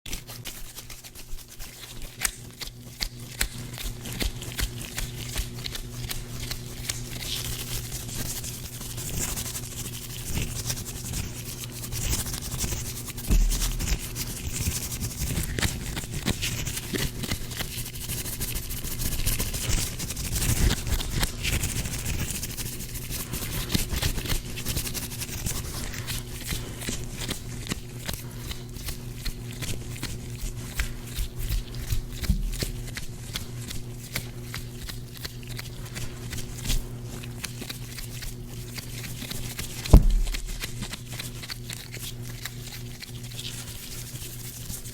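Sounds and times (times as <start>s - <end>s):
gloved hands rubbing and scraping: 0.1s - 44.9s
low thump: 39.9s - 40.6s.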